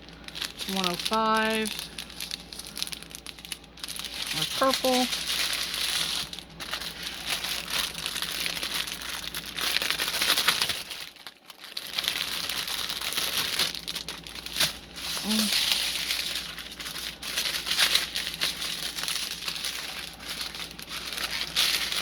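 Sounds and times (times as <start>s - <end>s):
plastic bags crinkling: 0.0s - 22.0s.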